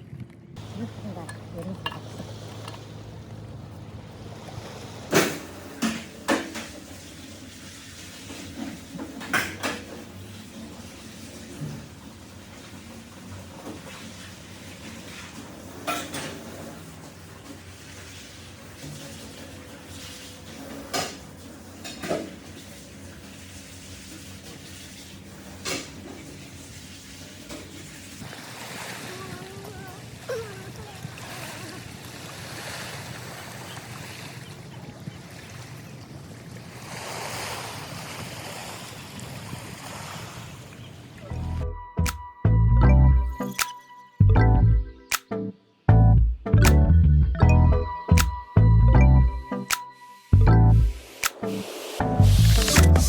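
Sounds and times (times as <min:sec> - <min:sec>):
low steady hum: 0:00.0 - 0:06.3
water running: 0:00.6 - 0:36.6, 0:50.3 - 0:53.0.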